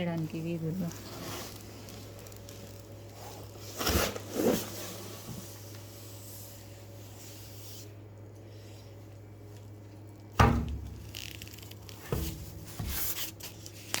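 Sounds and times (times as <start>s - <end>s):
packaging rustling and scraping: 0.0s - 6.2s, 10.8s - 14.0s.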